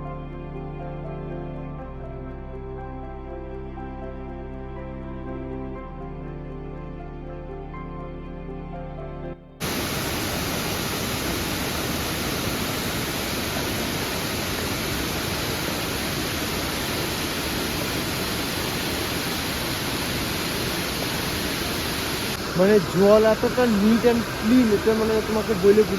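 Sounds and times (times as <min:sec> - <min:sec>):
background music: 0:00.0 - 0:09.6
waterfall pouring: 0:09.6 - 0:25.9.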